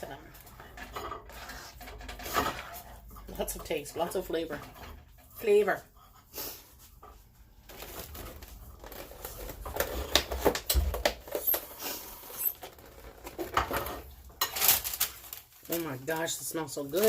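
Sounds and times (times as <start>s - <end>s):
rustling and crinkling: 6.6s - 17.0s.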